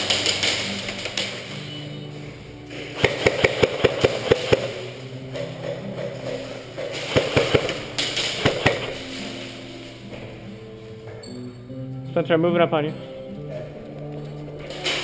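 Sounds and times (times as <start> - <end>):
airsoft guns firing: 0.0 - 1.8, 2.7 - 9.5
background music: 0.0 - 15.0.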